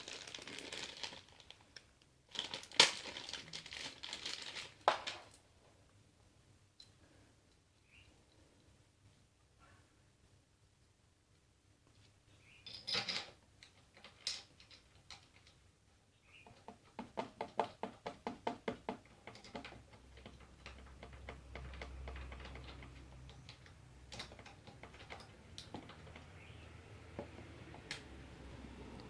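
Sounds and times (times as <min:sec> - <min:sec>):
small metal parts clinking: 0:12.6 - 0:15.7, 0:19.3 - 0:26.3.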